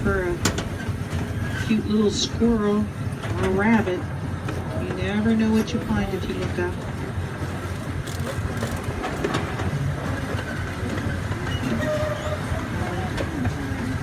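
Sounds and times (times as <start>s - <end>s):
train wheels running on rails: 0.0s - 14.0s.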